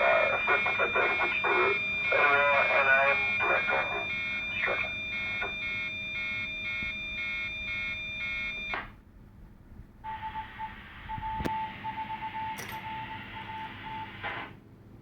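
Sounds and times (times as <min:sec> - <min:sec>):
stuttering radio buzzing tone: 0:00.0 - 0:05.0
hissy radio transmission: 0:00.0 - 0:05.4, 0:10.2 - 0:11.2, 0:13.2 - 0:14.6
radio squelch noise: 0:00.0 - 0:05.6, 0:13.2 - 0:14.6
broken beeping tone: 0:00.0 - 0:08.7.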